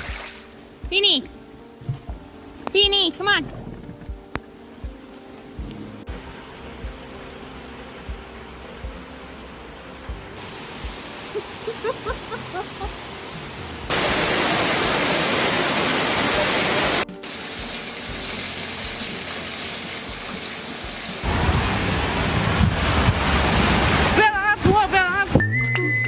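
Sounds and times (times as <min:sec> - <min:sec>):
steady rain falling: 0:00.0 - 0:25.4.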